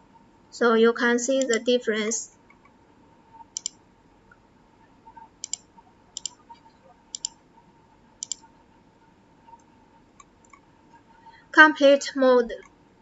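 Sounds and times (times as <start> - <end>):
mouse button clicking: 1.4 - 1.6, 3.6 - 3.8, 5.4 - 5.6, 7.2 - 7.4.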